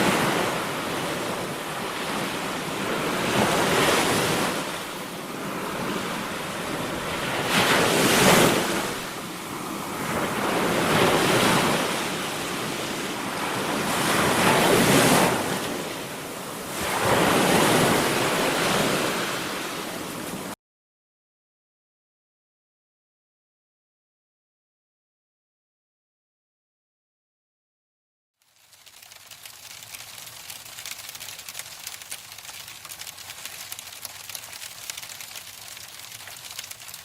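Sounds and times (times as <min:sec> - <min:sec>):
ocean waves breaking: 0:00.0 - 0:20.6, 0:28.8 - 0:37.0.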